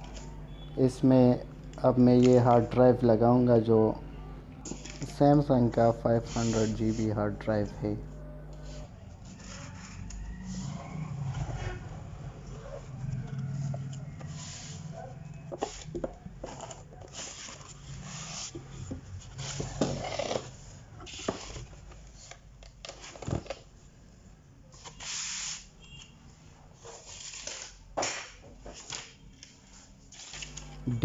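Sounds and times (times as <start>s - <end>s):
faint low hum: 0.0s - 21.1s.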